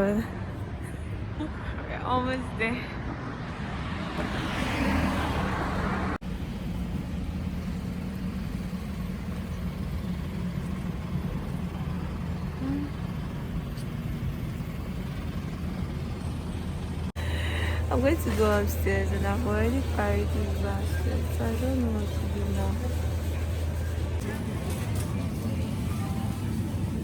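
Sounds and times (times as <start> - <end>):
vehicle passing: 0.0 - 9.1
low engine and road hum: 0.0 - 27.0.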